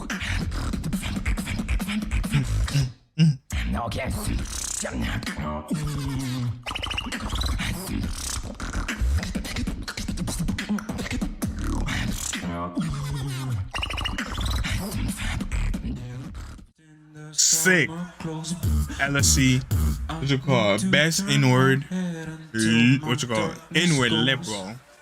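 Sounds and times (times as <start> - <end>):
beatboxing lip roll: 0.0 - 16.2.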